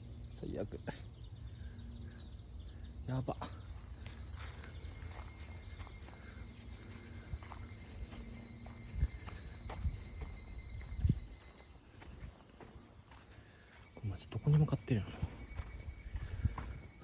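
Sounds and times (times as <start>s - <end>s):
insects shrilling: 0.0s - 17.0s
footsteps on a path: 3.4s - 17.0s.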